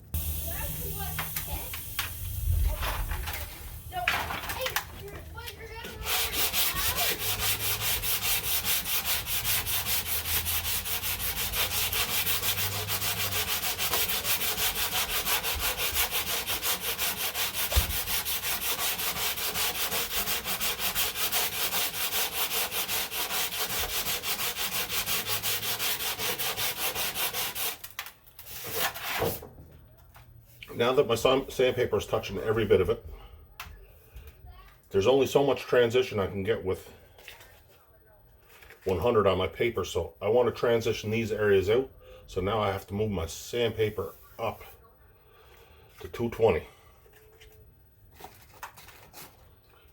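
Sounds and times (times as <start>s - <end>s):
sandpaper rubbing on filler: 5.7s - 27.9s, 28.5s - 29.4s.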